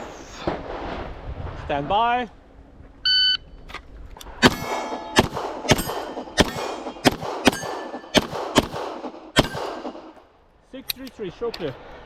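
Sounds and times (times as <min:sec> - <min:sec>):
steel plate clanging: 0:04.4 - 0:08.3
pistol shots: 0:04.4 - 0:10.2.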